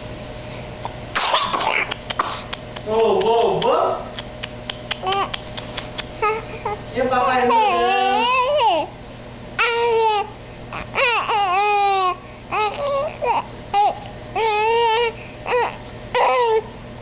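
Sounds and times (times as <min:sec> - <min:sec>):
baby crying: 0:05.0 - 0:05.4, 0:06.2 - 0:08.9, 0:09.6 - 0:16.7.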